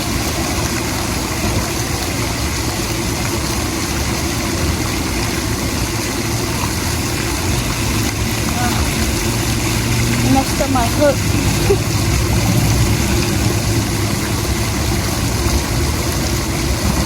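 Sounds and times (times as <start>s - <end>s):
loud steady rushing noise: 0.0s - 17.0s
low hum: 6.6s - 17.0s.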